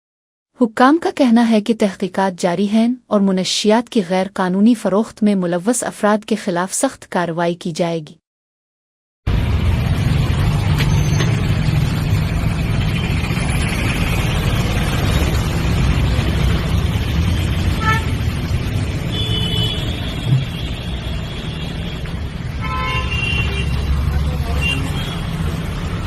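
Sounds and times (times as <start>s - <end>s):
traffic rumble: 9.3s - 26.0s
short pitched tone: 20.2s - 20.8s.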